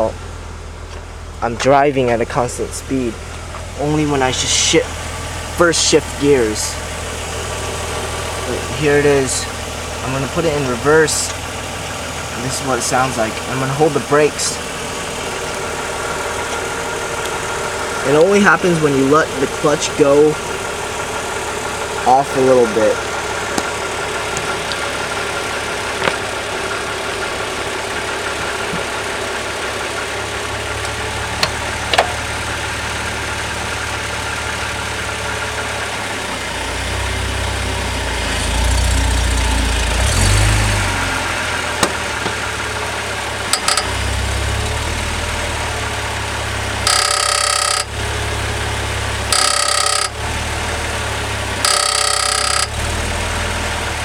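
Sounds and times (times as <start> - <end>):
car engine idling: 0.0 - 54.0
metallic rattle under car: 30.6 - 33.1, 43.5 - 44.0, 49.3 - 50.2.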